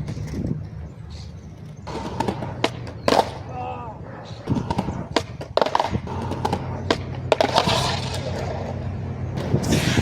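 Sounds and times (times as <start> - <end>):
skateboard rolling on concrete: 0.0 - 10.0
skateboard clacks and knocks: 4.4 - 8.8.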